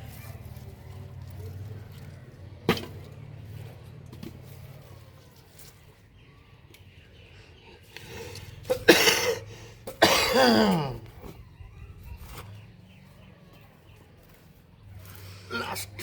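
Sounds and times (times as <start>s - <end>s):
person coughing: 8.7s - 11.0s.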